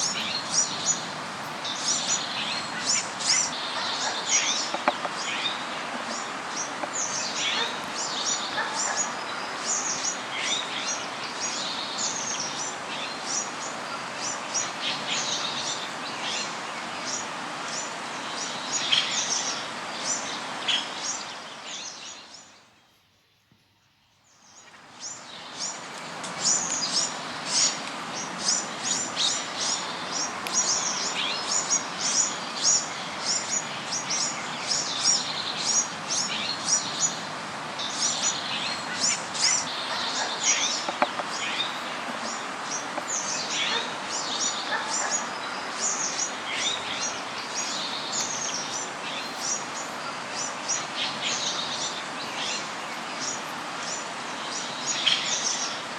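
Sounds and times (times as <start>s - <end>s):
steady background hiss: 0.0s - 55.9s
small birds chirping: 24.3s - 55.7s.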